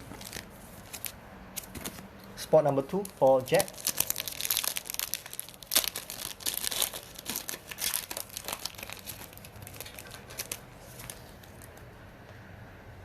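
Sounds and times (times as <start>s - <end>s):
plastic wrapper crinkling and tearing: 0.0s - 1.7s, 2.8s - 11.8s.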